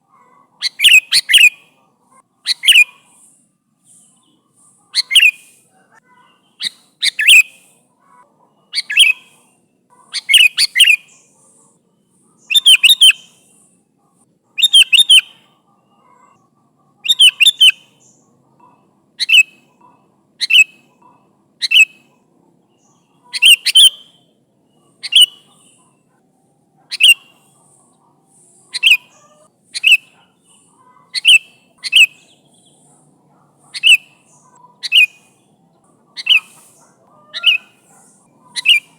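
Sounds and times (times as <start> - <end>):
bulbul chirping: 0.6 - 1.6, 5.0 - 5.6, 6.6 - 7.6, 10.1 - 11.3, 12.4 - 13.3, 14.6 - 15.4, 17.0 - 18.2, 20.4 - 20.9, 21.6 - 22.1, 22.8 - 25.9, 26.9 - 33.0, 33.7 - 35.5, 36.1 - 38.9.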